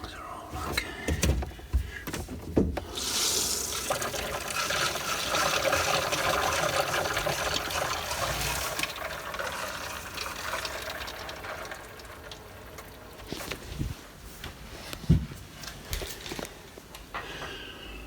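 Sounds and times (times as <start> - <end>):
water running from a tap: 2.9 - 13.4.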